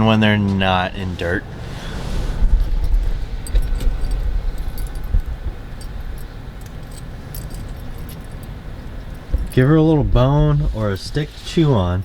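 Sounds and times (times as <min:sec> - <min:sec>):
vehicle rumble: 0:00.0 - 0:12.0
metallic jingling and clinking: 0:02.6 - 0:09.7.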